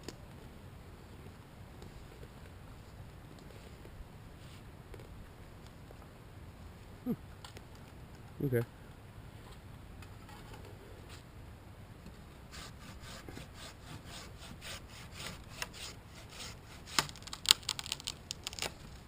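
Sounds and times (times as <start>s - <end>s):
handsaw cutting wood: 12.5s - 17.1s
wood cracking: 16.8s - 19.0s.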